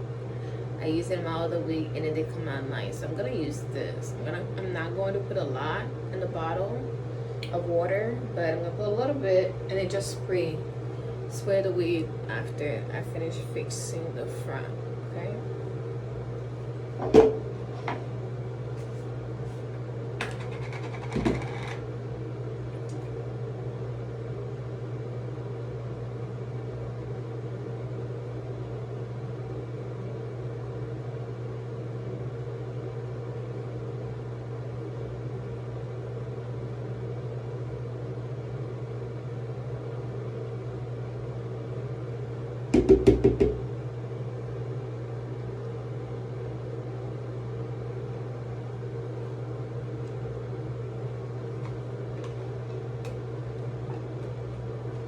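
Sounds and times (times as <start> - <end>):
low electrical hum: 0.0 - 55.0
objects knocking when handled: 20.2 - 21.8.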